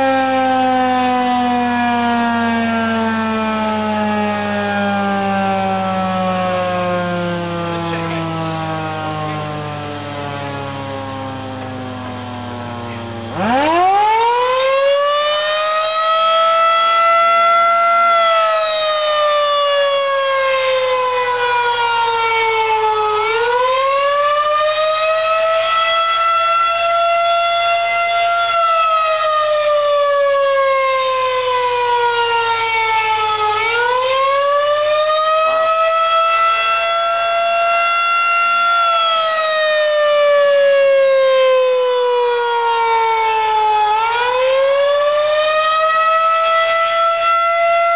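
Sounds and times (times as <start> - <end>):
tornado warning siren: 0.0 - 47.9.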